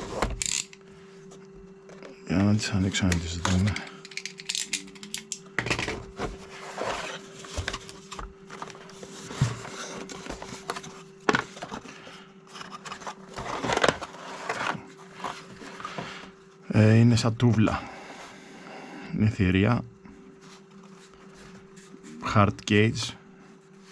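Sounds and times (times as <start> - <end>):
packaging rustling and scraping: 0.0 - 0.8, 3.3 - 16.3.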